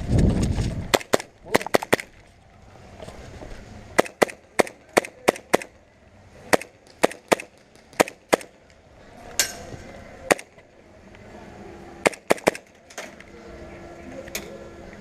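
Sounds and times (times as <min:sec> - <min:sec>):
airsoft gun shots: 0:00.9 - 0:02.1, 0:04.0 - 0:05.7, 0:06.5 - 0:08.6, 0:10.3 - 0:10.6, 0:12.0 - 0:12.7.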